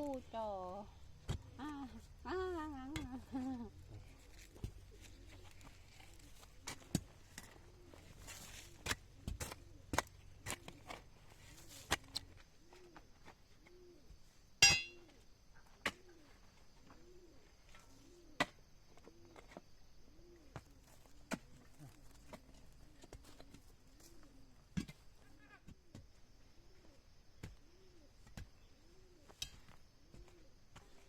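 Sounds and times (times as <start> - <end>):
dove cooing: 4.0 - 11.9, 12.6 - 14.2, 15.7 - 24.6, 25.2 - 26.0, 27.6 - 29.4, 30.0 - 30.6.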